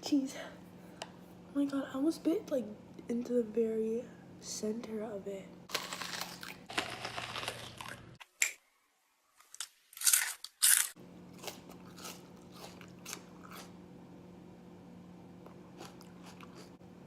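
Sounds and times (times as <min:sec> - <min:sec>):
onion crunching: 0:05.7 - 0:08.6, 0:09.4 - 0:13.8.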